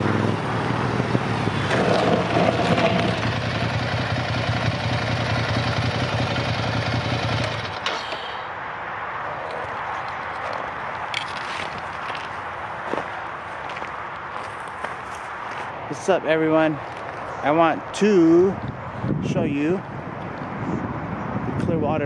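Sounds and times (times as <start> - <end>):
motorcycle engine idling: 0.0 - 8.0.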